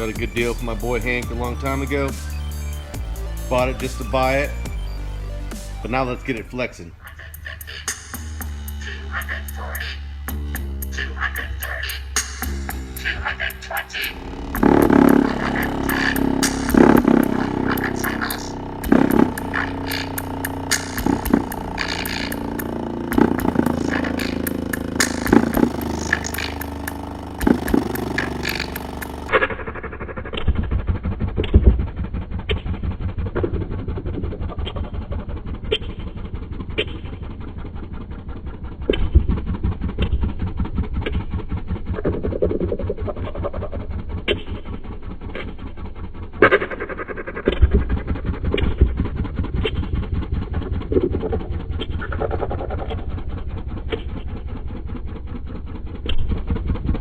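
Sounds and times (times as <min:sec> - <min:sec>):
deep loud bass tone: 0:00.0 - 0:06.8, 0:08.3 - 0:29.3
sharp clicks: 0:10.9 - 0:29.3.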